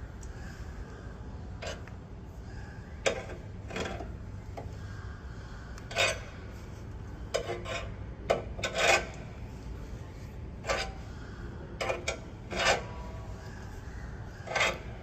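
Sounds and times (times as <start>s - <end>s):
metal tools scraping: 5.9s - 6.3s, 7.3s - 9.2s, 10.6s - 11.0s, 11.8s - 13.2s, 14.4s - 15.0s.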